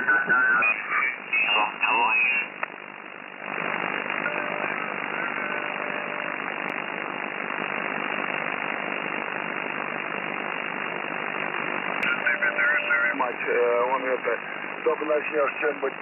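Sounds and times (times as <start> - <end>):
voice over radio: 0.0 - 2.6, 12.0 - 16.0
radio band noise hiss: 0.0 - 16.0.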